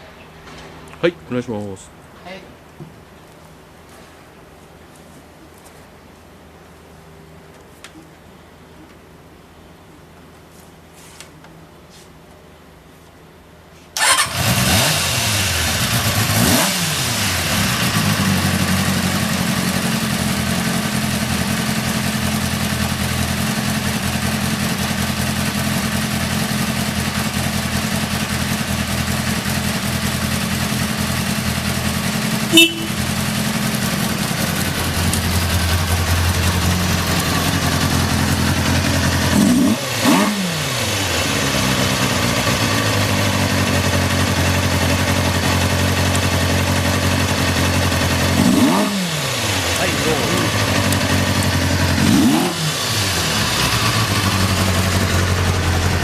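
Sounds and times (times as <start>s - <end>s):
motorcycle engine revving: 14.0s - 56.0s
motorcycle engine starting and idling: 14.0s - 56.0s.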